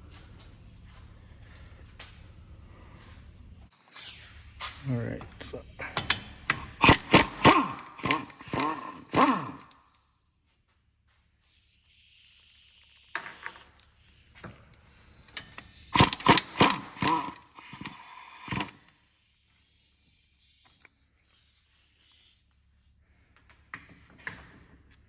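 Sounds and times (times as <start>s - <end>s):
metallic clanks of hand tools: 5.9s - 9.8s, 15.3s - 18.9s.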